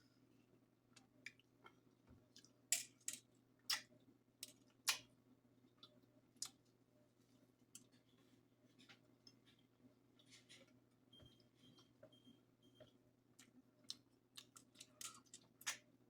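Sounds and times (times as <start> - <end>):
wet chewing and smacking: 5.7 - 6.7, 12.8 - 15.9.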